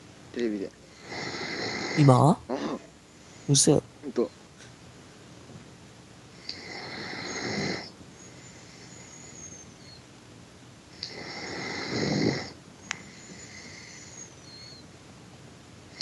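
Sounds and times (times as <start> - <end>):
person snoring with whistling tone: 6.5 - 10.0, 11.0 - 14.8.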